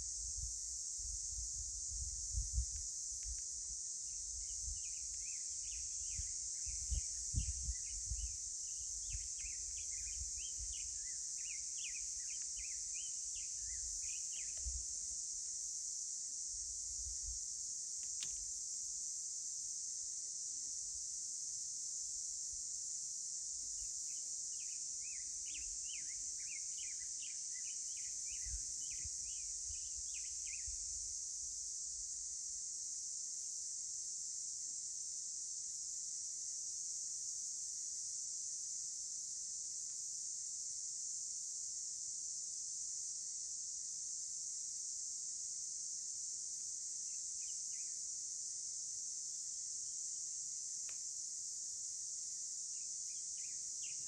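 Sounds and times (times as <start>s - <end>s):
wind rumble on microphone: 0.0s - 3.4s, 5.7s - 11.0s
high insect drone: 0.0s - 54.0s.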